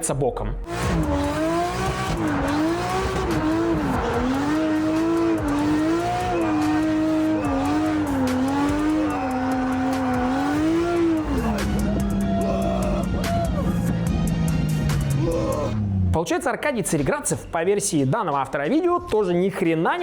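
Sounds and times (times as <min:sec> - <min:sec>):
car engine revving high: 0:00.6 - 0:16.2.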